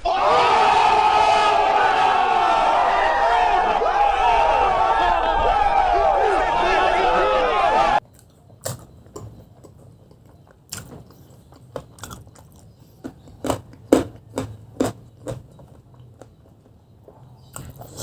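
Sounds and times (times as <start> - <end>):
chewing with sharp crunches: 8.0 - 18.0.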